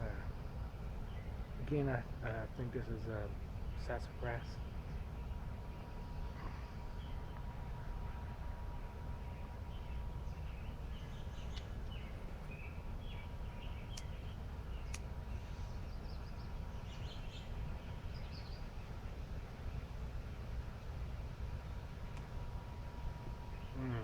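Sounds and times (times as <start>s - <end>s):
low outdoor rumble: 0.0s - 24.0s
small birds chirping: 0.0s - 24.0s
sharp clicks: 13.9s - 14.2s, 14.8s - 15.1s.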